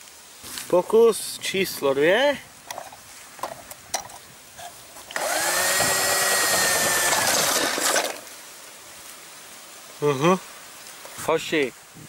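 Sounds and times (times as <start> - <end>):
small electric motor whirring: 5.1 - 8.3.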